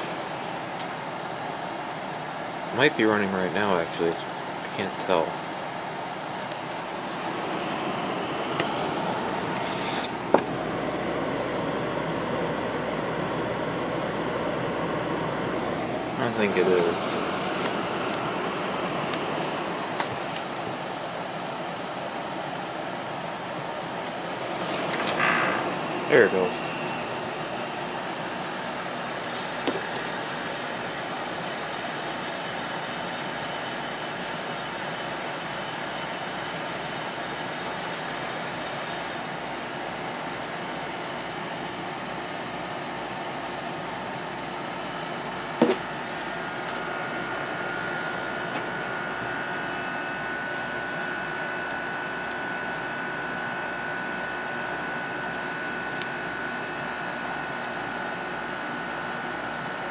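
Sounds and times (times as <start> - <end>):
air conditioner humming: 0.0 - 59.9
thin whine: 6.5 - 21.6, 24.1 - 31.8, 43.0 - 59.9.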